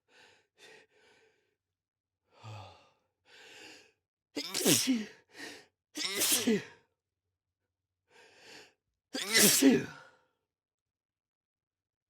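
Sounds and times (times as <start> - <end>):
person breathing and sighing: 2.3 - 3.9
person sneezing loudly: 4.4 - 5.1, 6.0 - 6.7, 9.2 - 10.0.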